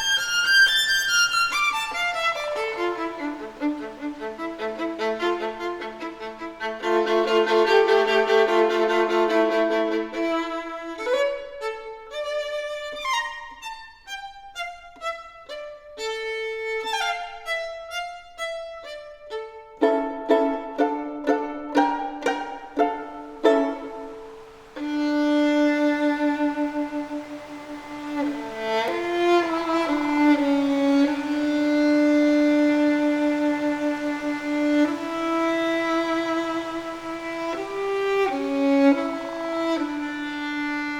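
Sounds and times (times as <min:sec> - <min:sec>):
solo violin slow melody: 0:00.0 - 0:40.9.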